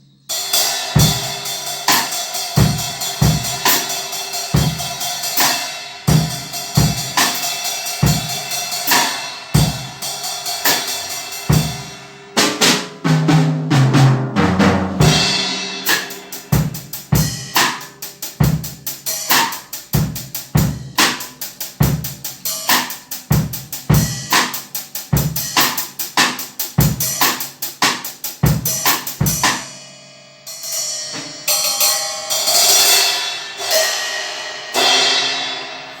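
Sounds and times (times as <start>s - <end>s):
drum kit groove: 0.3s - 29.8s, 30.4s - 36.0s
cymbal crashes: 15.0s - 17.9s, 30.5s - 36.0s.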